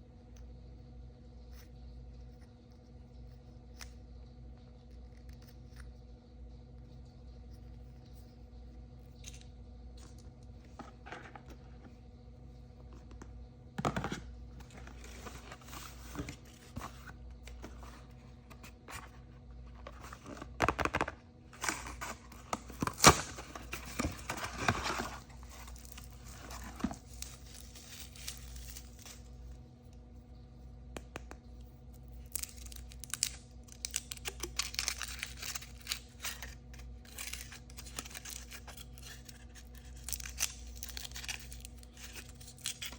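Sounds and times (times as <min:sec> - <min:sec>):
packaging tearing and crinkling: 0:20.0 - 0:29.3, 0:32.1 - 0:42.9.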